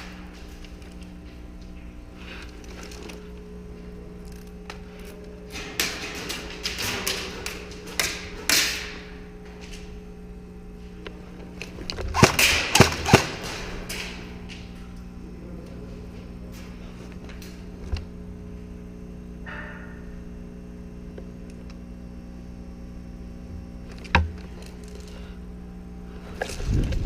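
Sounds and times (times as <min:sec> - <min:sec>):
steady low hum: 0:00.0 - 0:27.0
airsoft gun shots: 0:12.1 - 0:13.6.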